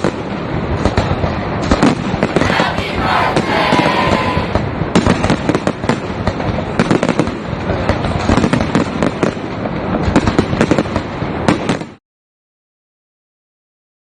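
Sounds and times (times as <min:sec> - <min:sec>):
fireworks bangs and crackles: 0:00.0 - 0:02.2, 0:04.8 - 0:12.0.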